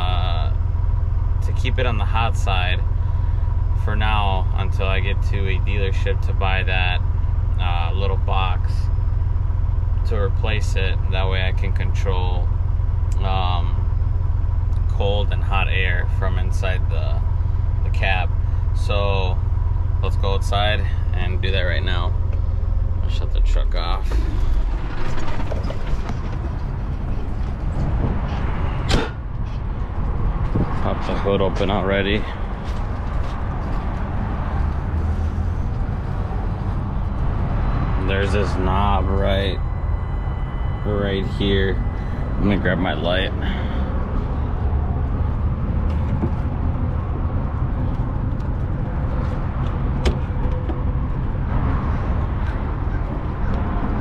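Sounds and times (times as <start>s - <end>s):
truck diesel engine running: 0.0s - 54.0s
sharp clunk: 28.8s - 29.2s.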